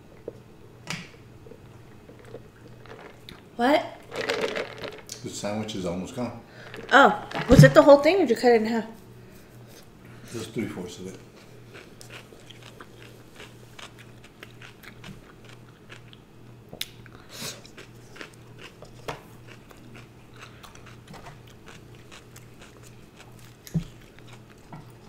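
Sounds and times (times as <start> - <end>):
chewing and crunching food: 1.4 - 5.2, 6.6 - 7.6, 11.0 - 25.0.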